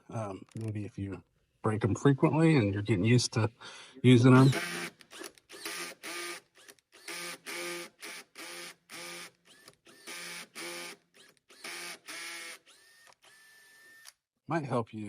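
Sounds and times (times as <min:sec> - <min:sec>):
cordless drill motor bursts: 0:04.4 - 0:14.2.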